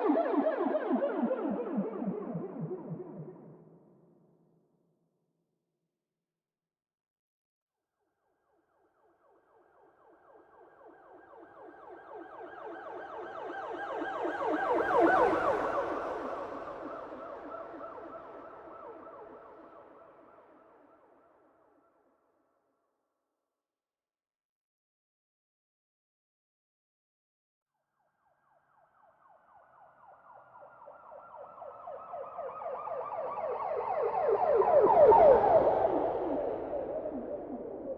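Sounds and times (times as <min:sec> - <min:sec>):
police siren: 0:00.0 - 0:03.5, 0:10.1 - 0:20.6, 0:28.2 - 0:37.9.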